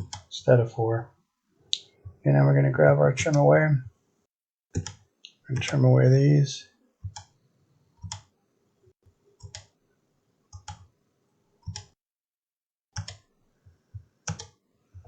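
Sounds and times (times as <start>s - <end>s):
computer mouse clicks: 4.8s - 5.8s, 7.0s - 7.4s, 8.0s - 8.3s, 9.4s - 9.7s, 10.5s - 10.9s, 11.6s - 12.0s, 13.0s - 13.3s, 14.2s - 14.6s.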